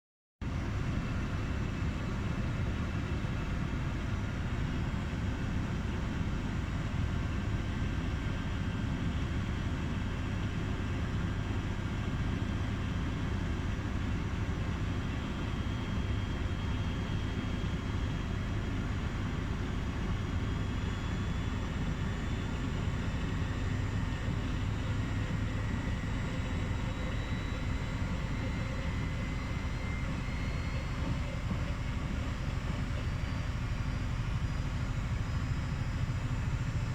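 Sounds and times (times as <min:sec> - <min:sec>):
faint motor whine: 0:00.5 - 0:36.9
washing machine humming: 0:21.8 - 0:36.9.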